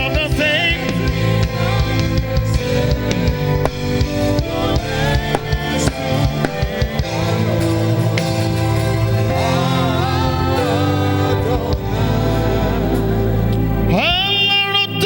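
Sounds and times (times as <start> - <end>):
worship band playing chords: 0.0 - 15.0
wavering melodic lead: 2.6 - 11.1
drum strikes: 3.0 - 7.5.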